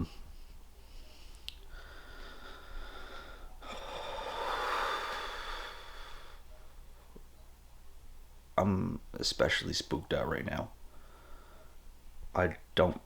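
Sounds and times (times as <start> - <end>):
person breathing heavily: 0.0 - 6.5, 10.9 - 11.8.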